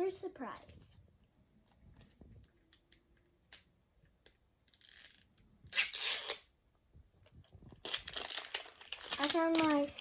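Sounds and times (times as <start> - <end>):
plastic packaging tearing: 4.8 - 6.5, 7.7 - 10.0.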